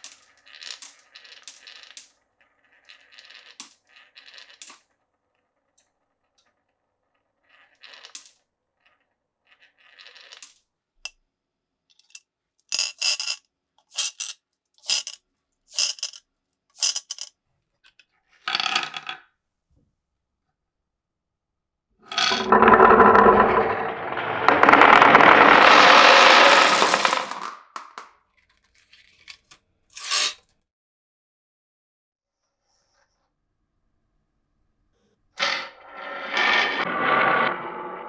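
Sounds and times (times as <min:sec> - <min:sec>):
marbles clacking on wood: 0:12.0 - 0:16.2, 0:16.8 - 0:17.3, 0:22.2 - 0:28.0
marbles rolling and rattling: 0:12.0 - 0:16.2, 0:16.8 - 0:17.3, 0:22.1 - 0:28.0.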